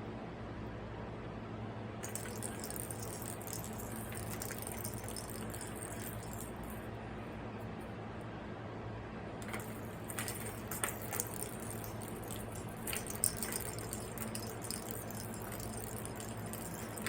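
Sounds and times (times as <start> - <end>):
steady low hum: 0.0 - 17.0
balls rattling in plastic toy: 2.0 - 6.8, 9.4 - 17.0.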